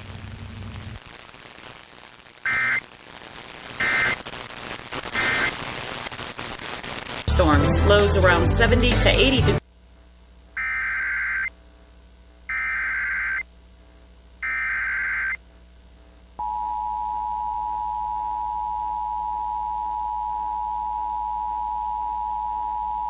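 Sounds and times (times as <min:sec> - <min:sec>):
buzzing digital data tones: 0:02.4 - 0:03.0, 0:03.8 - 0:04.3, 0:10.6 - 0:11.5, 0:12.5 - 0:13.4, 0:14.4 - 0:15.4.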